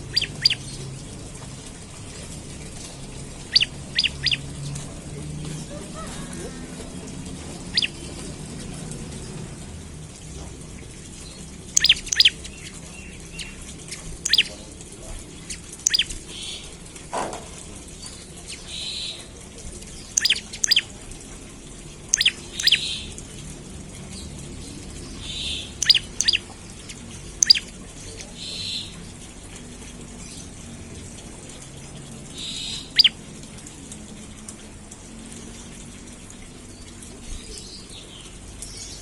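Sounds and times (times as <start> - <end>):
bird high sweeping call notes: 0.0 - 0.6, 3.5 - 4.4, 7.7 - 8.0, 11.8 - 12.7, 14.2 - 14.5, 15.8 - 16.1, 20.2 - 20.8, 22.1 - 23.0, 25.3 - 26.4, 27.4 - 27.7, 32.4 - 33.2.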